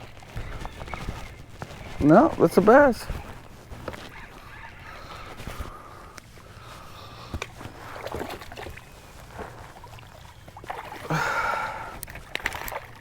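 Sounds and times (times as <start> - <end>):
rustling: 0.0 - 13.0.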